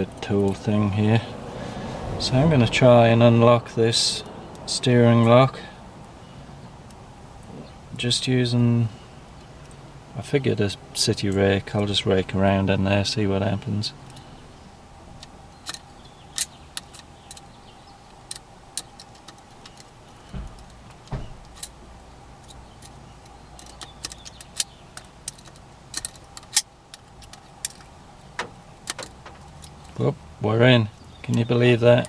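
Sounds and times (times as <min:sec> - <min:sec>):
dull knocks: 0:20.3 - 0:21.4.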